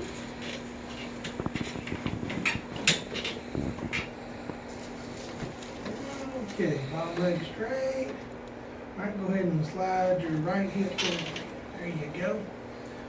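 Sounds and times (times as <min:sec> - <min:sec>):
rustling on padded table: 0:03.6 - 0:06.7.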